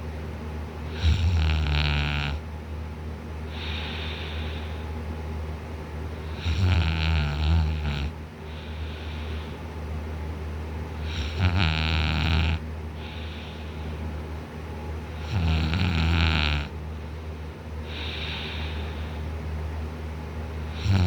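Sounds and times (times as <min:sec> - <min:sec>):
man snoring loudly: 0:00.9 - 0:02.4, 0:06.3 - 0:08.2, 0:11.0 - 0:13.3, 0:15.2 - 0:16.7, 0:20.7 - 0:21.0.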